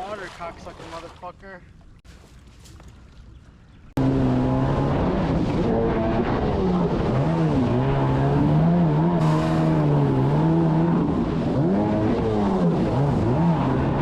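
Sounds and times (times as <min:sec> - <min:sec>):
jet ski engine revving: 0:04.0 - 0:14.0.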